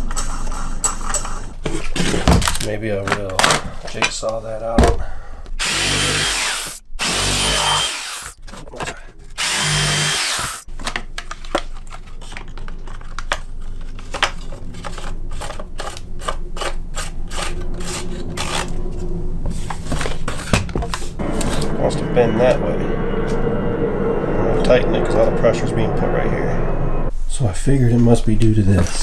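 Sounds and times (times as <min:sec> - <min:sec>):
electric jigsaw motor: 0:05.6 - 0:08.4, 0:09.4 - 0:10.6.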